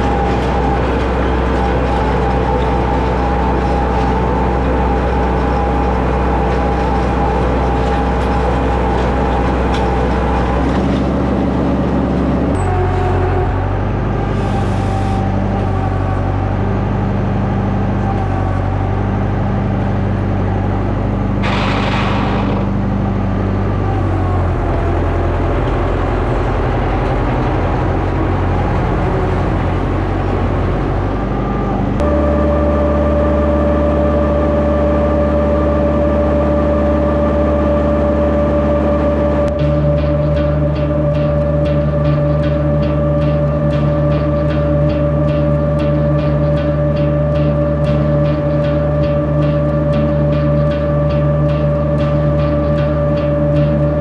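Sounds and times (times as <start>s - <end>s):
steady hum with higher tone: 0.0s - 54.0s
tractor diesel engine running: 0.0s - 54.0s
brief rattle: 21.4s - 22.8s.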